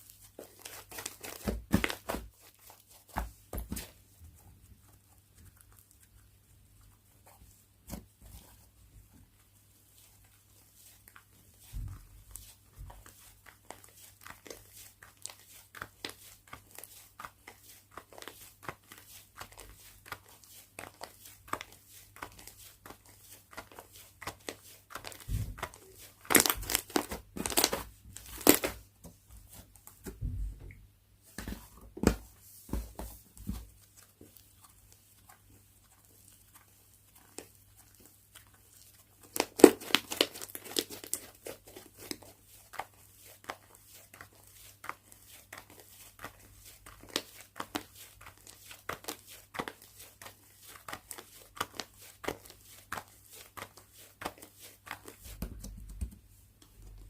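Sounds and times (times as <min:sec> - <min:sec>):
slime squishing with crackling pops: 0:39.3 - 0:41.2.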